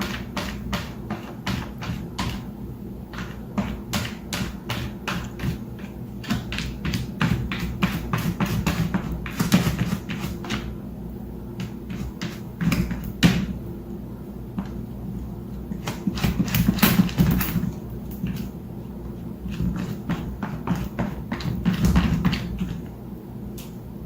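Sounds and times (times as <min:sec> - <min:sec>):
knocking and tapping: 0:00.0 - 0:02.5, 0:03.1 - 0:10.7, 0:11.6 - 0:13.6, 0:15.8 - 0:18.5, 0:19.5 - 0:22.8
low steady hum: 0:00.0 - 0:24.0.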